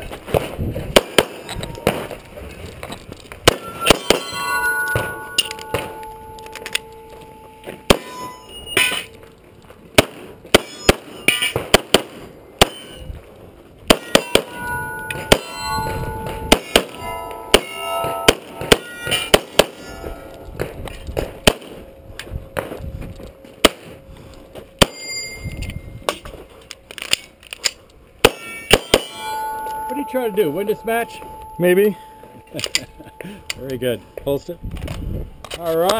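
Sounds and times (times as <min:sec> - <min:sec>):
pistol shots: 0:00.9 - 0:02.0, 0:13.9 - 0:14.5
steel targets ringing clang: 0:01.0 - 0:02.2, 0:03.4 - 0:09.3, 0:10.5 - 0:11.7, 0:12.6 - 0:13.2, 0:13.9 - 0:27.4, 0:28.2 - 0:34.8.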